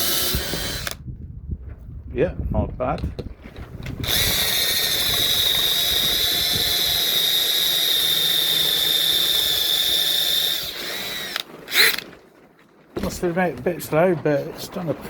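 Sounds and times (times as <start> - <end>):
power drill whining into wood: 0.0 - 1.0, 3.6 - 12.2.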